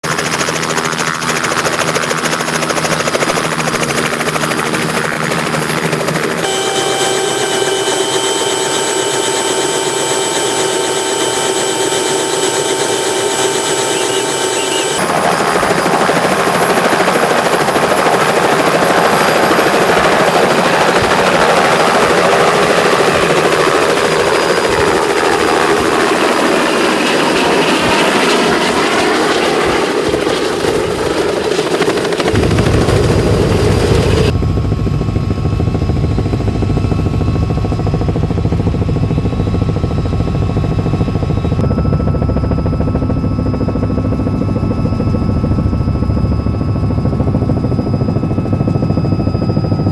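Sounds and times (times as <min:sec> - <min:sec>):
helicopter engine and rotor: 0:00.0 - 0:49.9
deep low rumble: 0:32.4 - 0:37.9.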